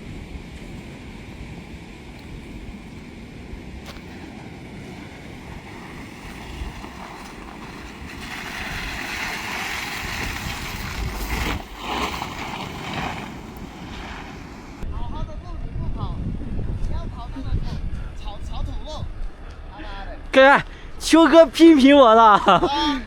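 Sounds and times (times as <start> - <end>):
vehicle engine and tyre noise: 0.0 - 14.9
wind on microphone: 0.0 - 19.6.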